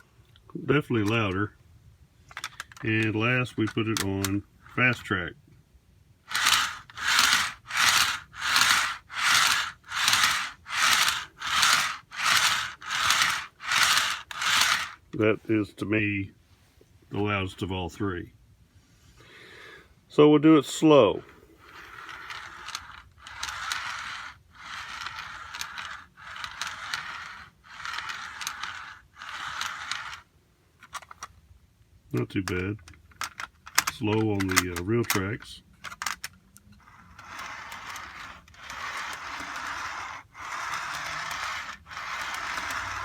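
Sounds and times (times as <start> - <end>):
toy train wheels rolling on track: 0.8 - 1.4, 2.3 - 5.2, 6.2 - 15.1, 21.6 - 31.3, 32.1 - 43.0.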